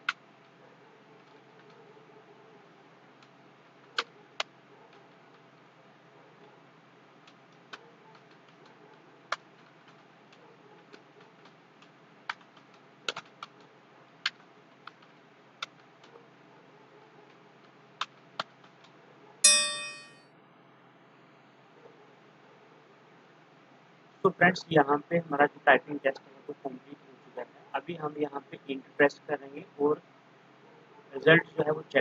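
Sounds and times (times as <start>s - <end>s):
short ringing chime: 19.4s - 20.2s.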